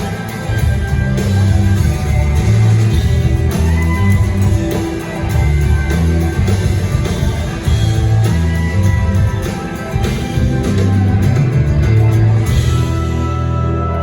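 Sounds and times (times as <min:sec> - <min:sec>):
bass: 0:00.0 - 0:14.0
drums: 0:00.0 - 0:14.0
electric guitar: 0:00.0 - 0:14.0.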